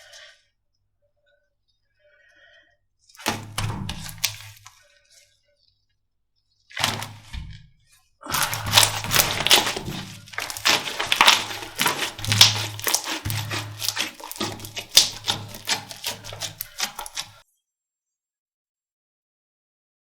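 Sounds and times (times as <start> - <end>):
slime crackling and popping: 3.2 - 4.7, 8.3 - 17.4.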